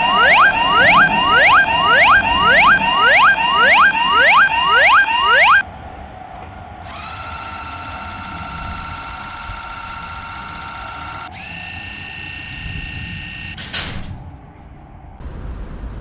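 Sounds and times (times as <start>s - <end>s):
electric train motor whine: 0.0s - 5.6s, 6.8s - 13.6s
rising swoops: 0.0s - 5.6s.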